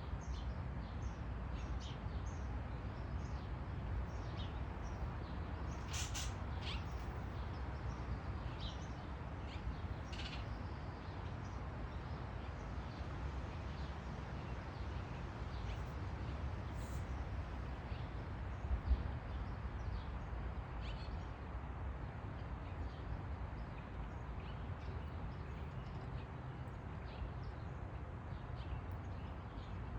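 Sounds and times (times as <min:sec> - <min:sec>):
faint short bird calls: 0:05.8 - 0:07.1, 0:09.5 - 0:10.5.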